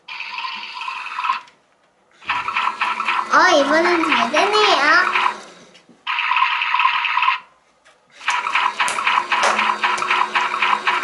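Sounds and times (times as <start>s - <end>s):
toy washing machine swishing water: 2.2s - 7.5s, 8.2s - 11.0s.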